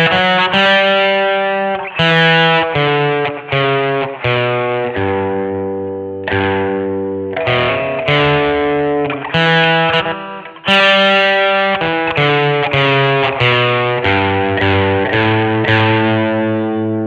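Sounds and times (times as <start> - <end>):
distorted electric guitar chords: 0.0 - 17.0.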